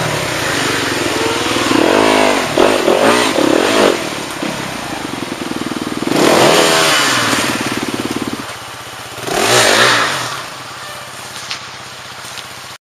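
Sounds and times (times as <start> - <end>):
engine running: 0.0 - 12.8.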